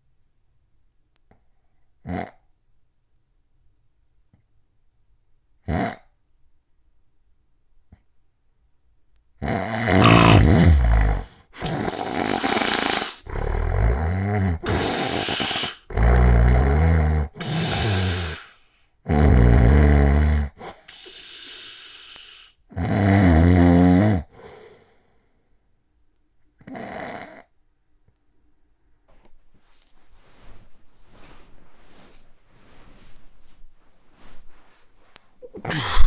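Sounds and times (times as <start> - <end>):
hissing breath: 9.9 - 14.0, 14.6 - 16.4, 17.3 - 18.6, 20.6 - 22.6, 35.6 - 36.0
man snoring heavily: 9.9 - 18.5, 19.1 - 22.5, 35.7 - 36.0.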